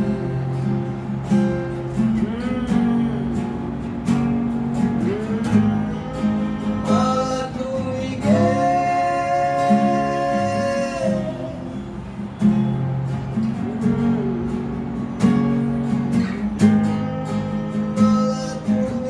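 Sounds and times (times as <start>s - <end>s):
acoustic guitar strummed: 0.0s - 19.0s
person singing wordlessly: 5.0s - 11.8s, 17.8s - 19.0s.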